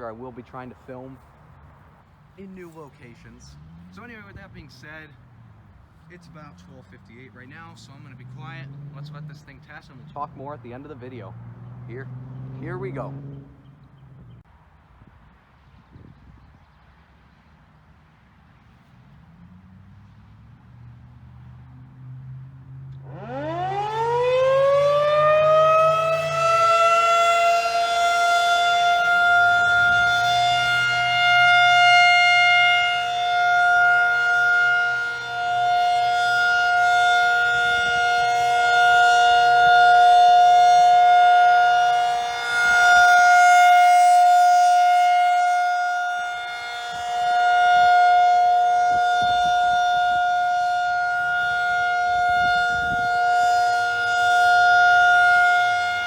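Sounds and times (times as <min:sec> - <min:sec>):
tornado siren winding up: 0:22.9 - 0:56.0.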